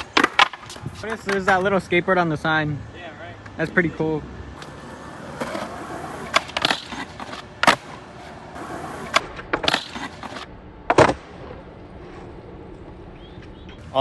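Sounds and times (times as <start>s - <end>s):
skateboard clacking on ground: 0.0s - 1.7s, 4.6s - 8.0s, 8.9s - 13.8s
skateboard wheels rolling on wet pavement: 4.5s - 14.0s.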